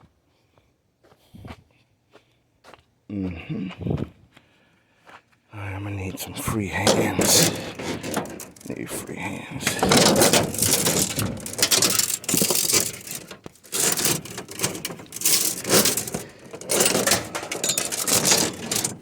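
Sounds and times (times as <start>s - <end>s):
hard objects clattering: 6.5s - 19.0s.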